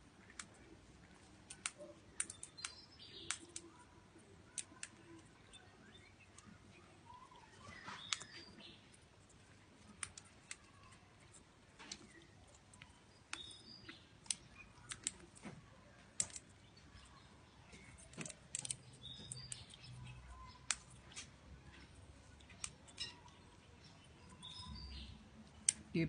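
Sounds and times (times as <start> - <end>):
birds chirping: 0.0 - 26.0
sharp clicks and taps: 1.5 - 3.8, 14.2 - 23.3.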